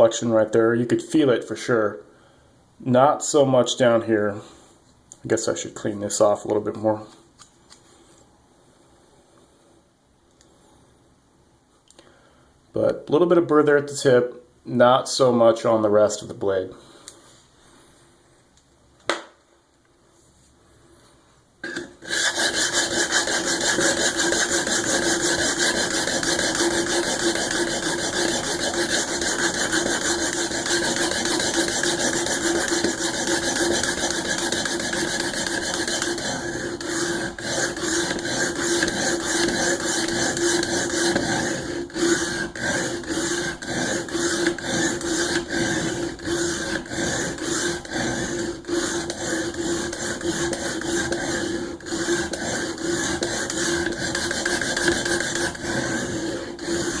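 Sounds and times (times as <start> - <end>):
blade scraping sharpening plate: 21.6 - 57.0.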